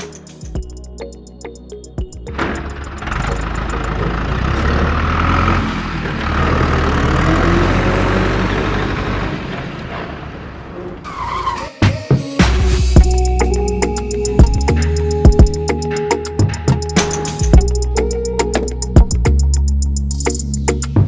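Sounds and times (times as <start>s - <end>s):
motor humming: 2.4s - 7.9s.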